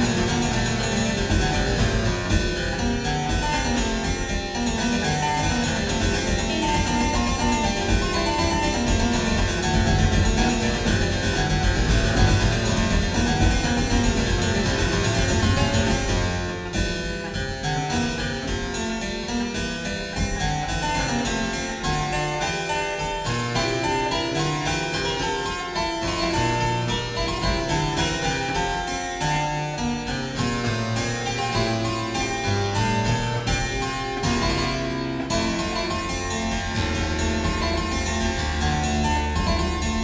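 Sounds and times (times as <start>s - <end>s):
keyboard playing a fugue: 0.0s - 40.0s.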